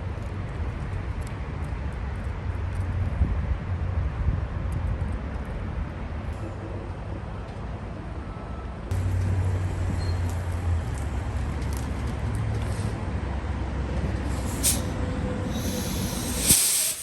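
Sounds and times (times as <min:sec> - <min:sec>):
diesel engine rumbling: 0:06.2 - 0:17.0.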